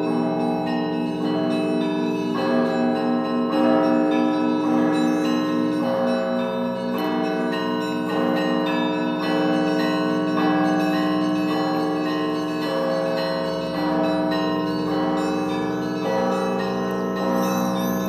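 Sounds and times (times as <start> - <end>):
church bells ringing together: 0.0 - 18.0
low throbbing bell tone: 12.8 - 18.0.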